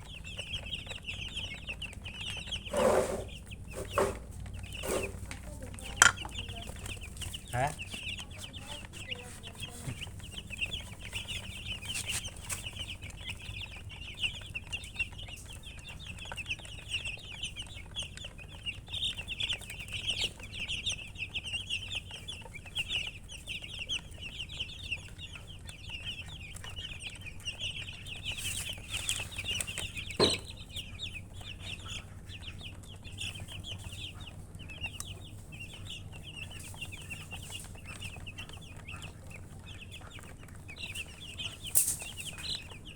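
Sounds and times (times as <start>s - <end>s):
baby chicks peeping: 0.0s - 42.9s
sharp knock: 6.0s - 6.2s.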